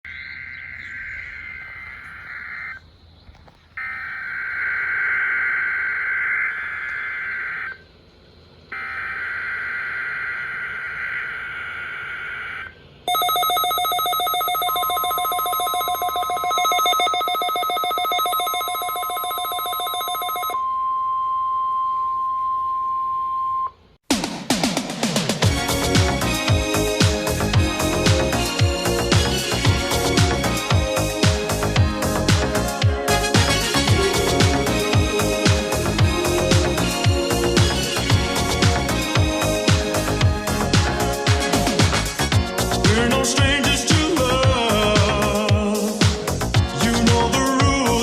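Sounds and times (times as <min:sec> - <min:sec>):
pure tone: 0:03.8 - 0:07.8, 0:08.7 - 0:23.9
screeching digital header bursts: 0:03.8 - 0:07.8, 0:08.7 - 0:12.8
loud buzzing attention tone: 0:08.7 - 0:20.6.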